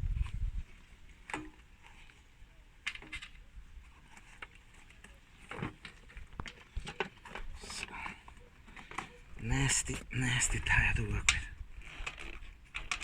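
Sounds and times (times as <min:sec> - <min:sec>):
bicycle tyre clicks and rubbing: 0:11.3 - 0:13.0.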